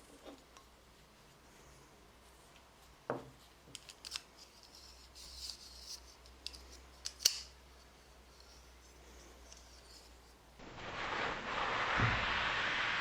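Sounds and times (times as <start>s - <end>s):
short scrape: 10.6s - 13.0s.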